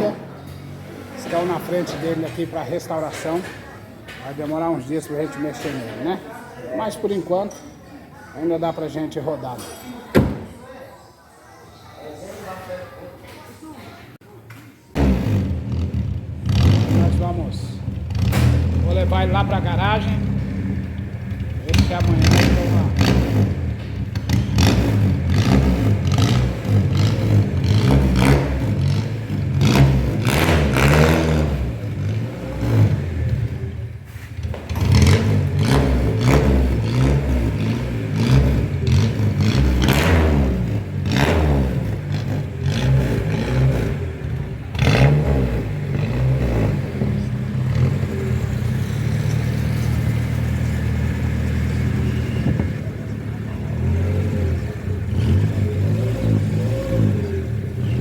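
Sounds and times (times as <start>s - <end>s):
car engine revving: 14.9s - 58.0s.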